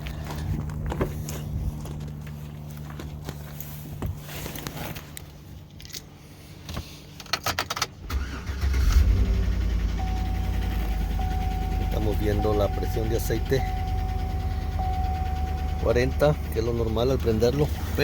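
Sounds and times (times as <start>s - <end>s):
engine cranking and starting: 7.5s - 18.0s.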